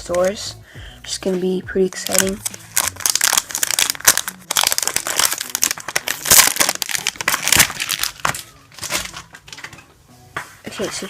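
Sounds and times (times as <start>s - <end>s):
packaging crinkling and rustling: 1.9s - 9.8s.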